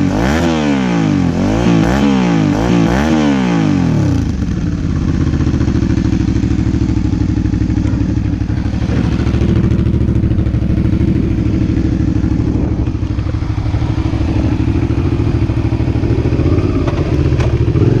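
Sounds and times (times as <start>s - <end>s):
motorcycle engine idling: 3.7s - 18.0s.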